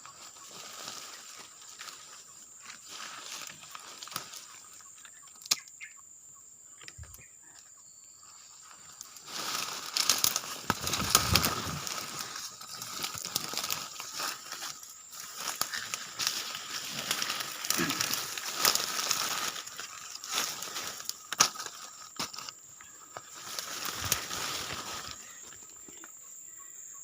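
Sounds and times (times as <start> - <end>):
rustling and crackling: 8.8 - 26.2.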